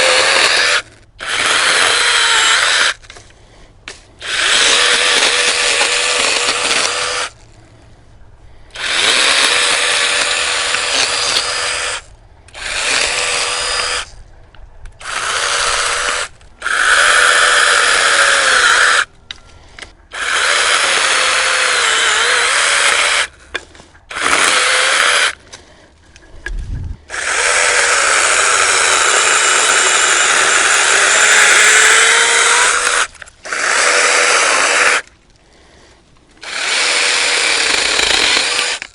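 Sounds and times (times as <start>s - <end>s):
mini chainsaw cutting branch: 3.9s - 7.4s, 8.7s - 14.1s, 27.1s - 35.1s, 36.4s - 38.9s.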